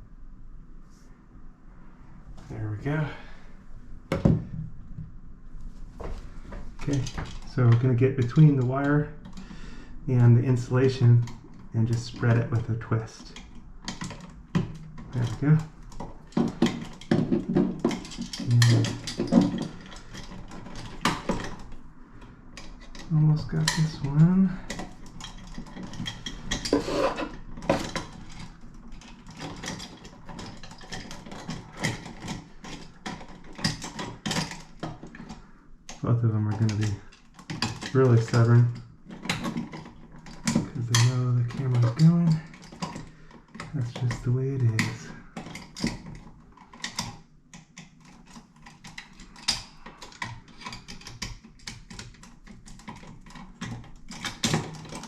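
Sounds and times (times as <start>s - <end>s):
tool and wire scraping on screws: 10.2s - 21.8s, 22.5s - 36.0s, 36.6s - 55.0s.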